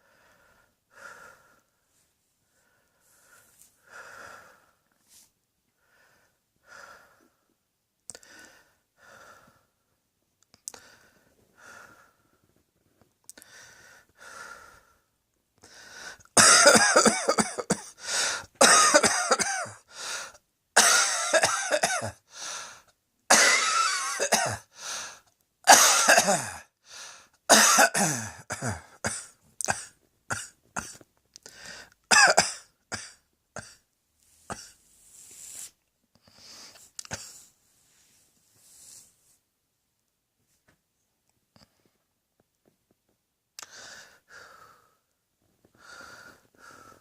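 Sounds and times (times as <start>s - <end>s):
person coughing: 16.4s - 18.0s, 18.6s - 19.8s, 20.8s - 22.2s, 23.3s - 24.7s, 25.7s - 26.7s, 27.5s - 31.0s, 32.1s - 33.8s
soft short breaths: 34.2s - 39.4s.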